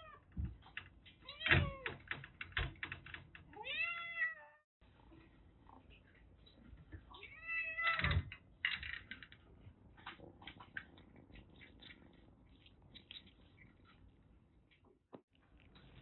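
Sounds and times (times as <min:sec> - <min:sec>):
kittens crunching dry kibble: 0:09.0 - 0:14.1.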